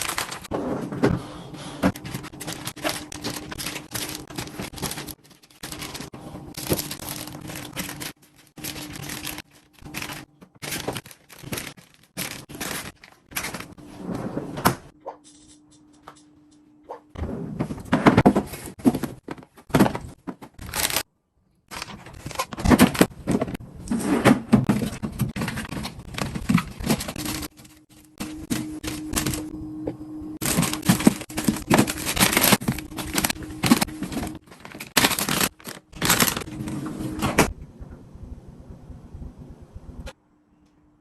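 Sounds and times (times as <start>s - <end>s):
refrigerator hum: 0.0s - 41.0s.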